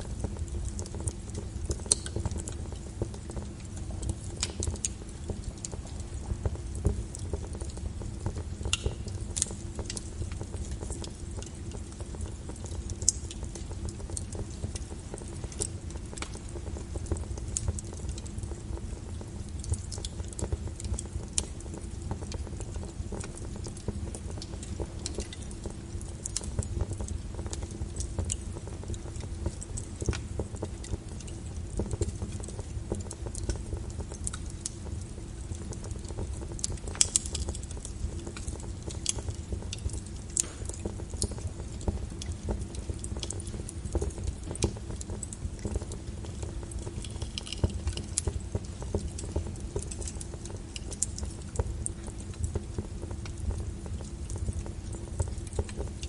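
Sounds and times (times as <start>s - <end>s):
low rumble of flames: 0.0s - 56.0s
wood fire crackling: 0.0s - 56.0s.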